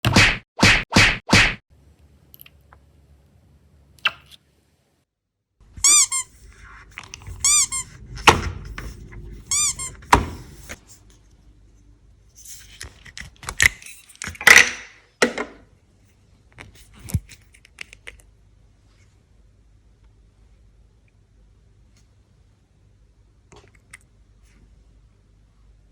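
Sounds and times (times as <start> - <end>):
slime squeaks: 5.8 - 8.0, 9.5 - 10.2.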